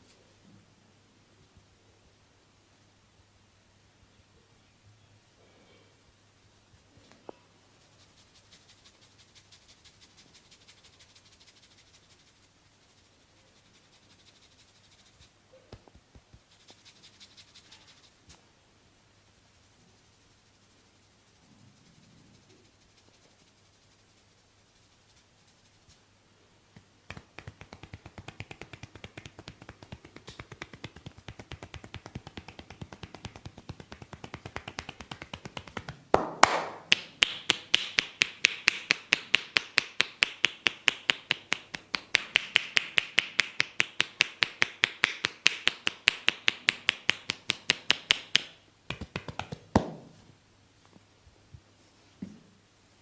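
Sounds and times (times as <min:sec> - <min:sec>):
tapping on forehead: 0:27.1 - 0:50.1.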